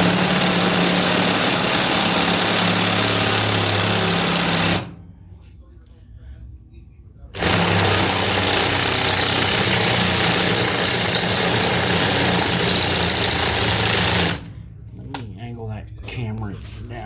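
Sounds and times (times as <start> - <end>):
electric drill drilling metal: 0.0 - 5.0, 7.4 - 14.5.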